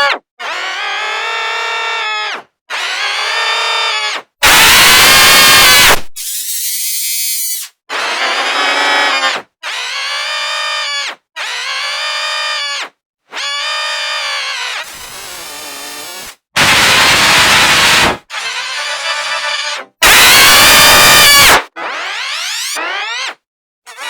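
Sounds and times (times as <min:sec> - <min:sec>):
layered cartoon screams: 0:00.0 - 0:06.9, 0:16.6 - 0:24.0.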